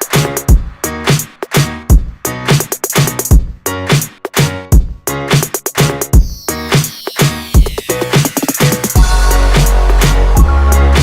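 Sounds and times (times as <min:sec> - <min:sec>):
electronic music: 0:00.0 - 0:11.0.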